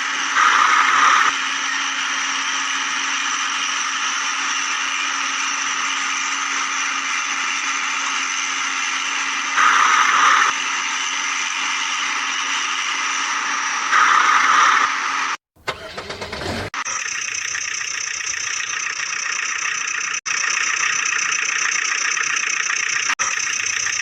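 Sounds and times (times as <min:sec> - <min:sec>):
rasping noise bursts: 0:00.0 - 0:10.7
toy electric motor whining: 0:00.0 - 0:24.0.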